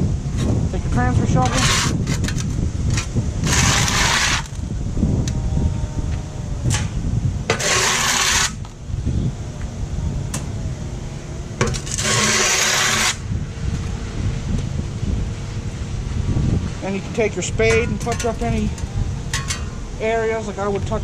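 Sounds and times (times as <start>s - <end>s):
wind rumble on microphone: 0.0s - 21.0s
shovel scraping pavement: 1.3s - 4.6s, 7.5s - 8.7s, 11.6s - 13.3s.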